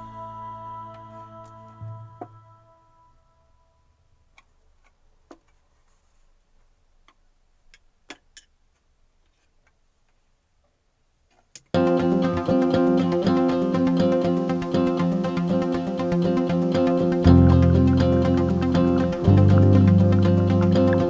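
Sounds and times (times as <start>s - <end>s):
background music: 0.0s - 3.8s, 11.8s - 21.0s.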